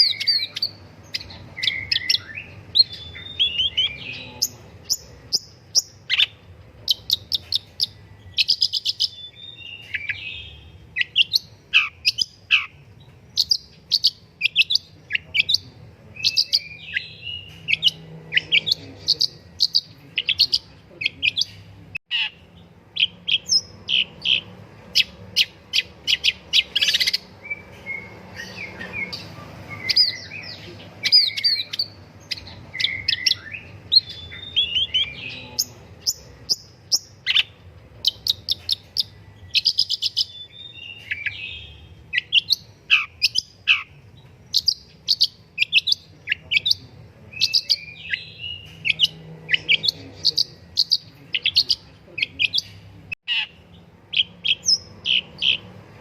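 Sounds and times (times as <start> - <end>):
bird singing chirps and trills: 0.0 - 56.0.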